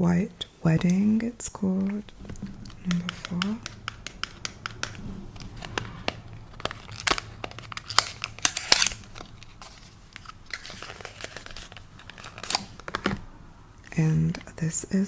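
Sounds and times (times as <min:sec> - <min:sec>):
paper or plastic crinkling: 0:01.7 - 0:13.4
packaging taps and clicks: 0:01.8 - 0:13.3.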